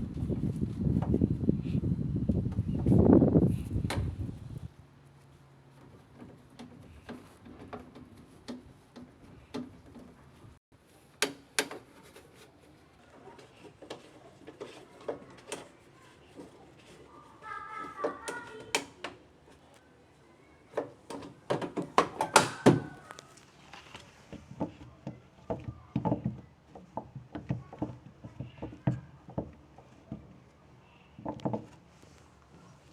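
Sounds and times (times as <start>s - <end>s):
clicks and knocks of handwork: 11.0s - 17.1s, 17.7s - 19.8s, 20.7s - 32.9s.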